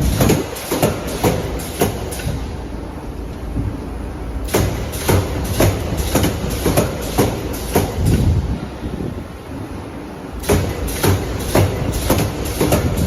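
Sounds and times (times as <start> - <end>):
welding heads knocking: 10.4 - 13.0.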